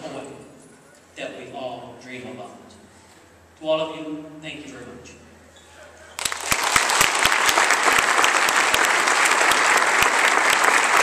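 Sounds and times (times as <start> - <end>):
audience applauding: 6.2 - 11.0.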